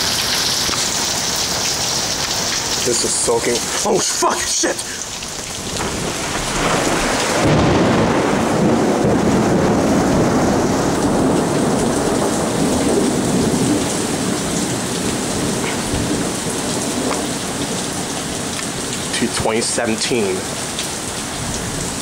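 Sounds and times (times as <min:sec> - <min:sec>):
heavy rain pouring: 0:00.0 - 0:22.0
thunder rolling: 0:05.4 - 0:18.5.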